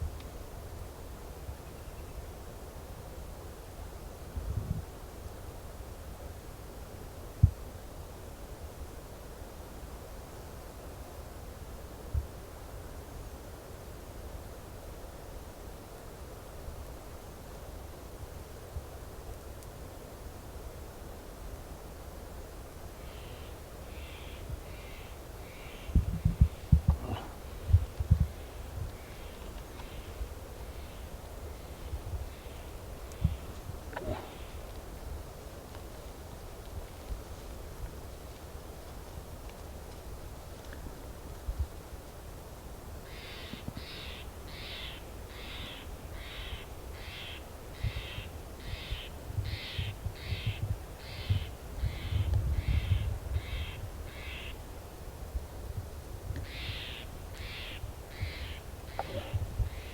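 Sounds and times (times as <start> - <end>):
wind thumps on microphone: 25.9 - 29.0, 49.4 - 53.6, 58.2 - 59.9
bird calling: 28.4 - 34.7, 43.1 - 54.6, 56.4 - 59.9
faint calls: 28.4 - 34.7, 56.4 - 59.9.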